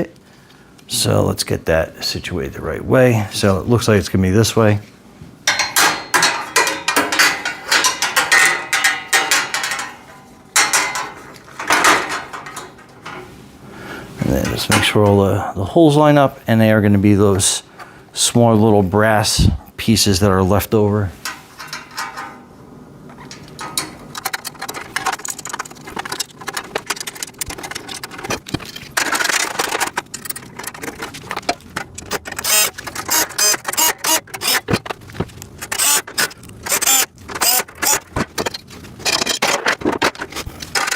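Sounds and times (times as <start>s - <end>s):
metal hardware clicking and rattling: 5.4s - 13.4s, 14.3s - 15.2s, 21.2s - 40.9s
metal parts clanking: 5.4s - 13.4s, 14.2s - 15.2s, 21.2s - 40.9s
metal rasping: 23.1s - 40.9s.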